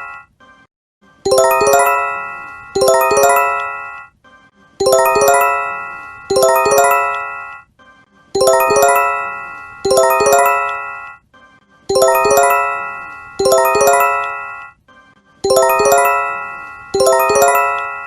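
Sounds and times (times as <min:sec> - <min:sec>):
bell-like warning chime: 0:01.3 - 0:04.0, 0:04.8 - 0:07.6, 0:08.4 - 0:11.2, 0:11.9 - 0:14.7, 0:15.5 - 0:18.0.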